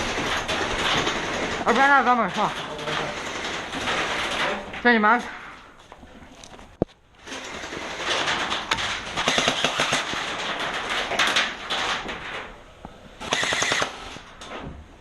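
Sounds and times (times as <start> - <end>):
gel blaster full-auto bursts: 9.2 - 10.0, 13.2 - 14.1.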